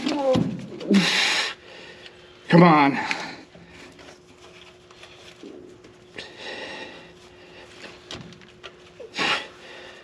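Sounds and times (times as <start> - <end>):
man straining and breathing hard: 0.6 - 4.0, 6.2 - 8.0, 9.0 - 10.0.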